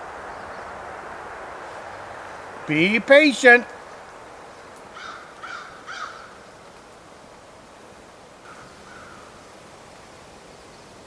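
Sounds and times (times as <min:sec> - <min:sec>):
crow cawing: 0:04.9 - 0:06.4, 0:08.4 - 0:09.3.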